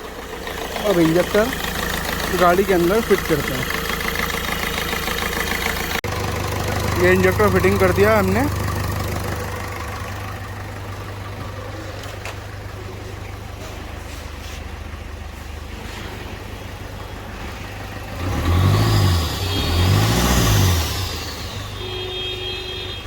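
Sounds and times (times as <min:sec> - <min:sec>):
engine revving: 0:00.0 - 0:12.2, 0:17.2 - 0:22.1
diesel engine idling: 0:00.0 - 0:23.0.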